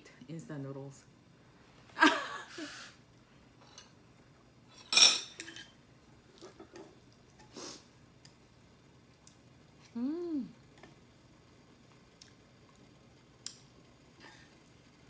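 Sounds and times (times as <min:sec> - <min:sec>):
utensils clinking against dishes: 0:04.7 - 0:05.8.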